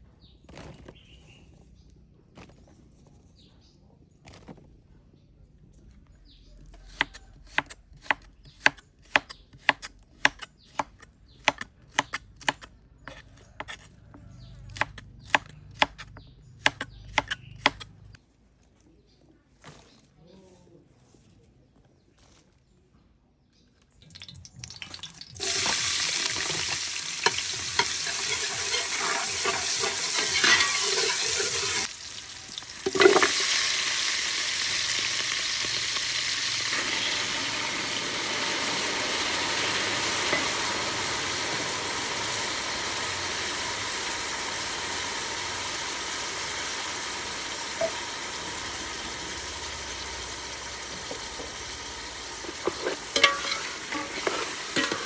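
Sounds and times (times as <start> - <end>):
food sizzling in a pan: 24.1 - 55.0
stirring: 24.5 - 37.6, 49.0 - 55.0.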